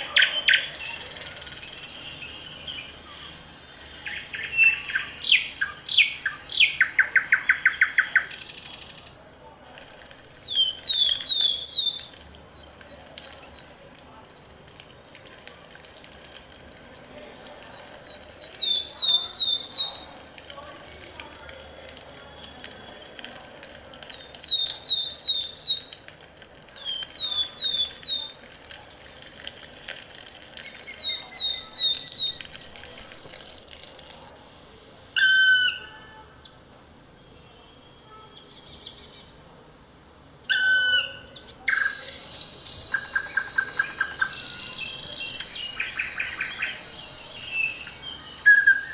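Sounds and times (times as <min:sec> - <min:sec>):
birds singing high notes: 0:10.5 - 0:12.8, 0:17.5 - 0:20.1, 0:24.2 - 0:26.0, 0:30.8 - 0:32.4, 0:35.2 - 0:36.6, 0:40.4 - 0:48.9
different bird call: 0:35.2 - 0:36.6, 0:40.4 - 0:46.9.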